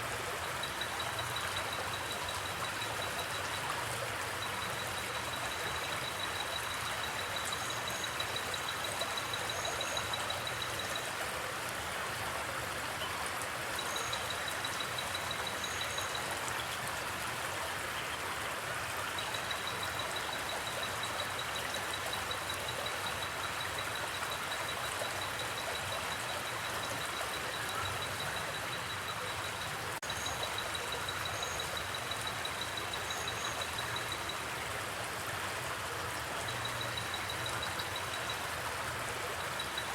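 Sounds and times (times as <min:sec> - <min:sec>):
crickets trilling: 0:00.2 - 0:11.1.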